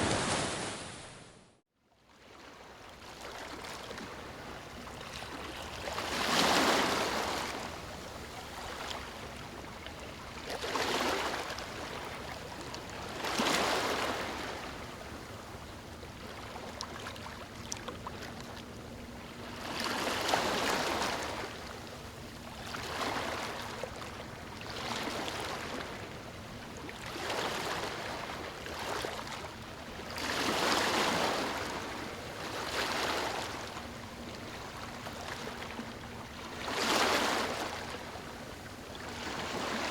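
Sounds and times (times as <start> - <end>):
sea waves breaking on beach: 0.0 - 1.3, 2.4 - 15.0, 19.4 - 21.7, 22.6 - 26.2, 27.0 - 35.9, 36.5 - 38.4.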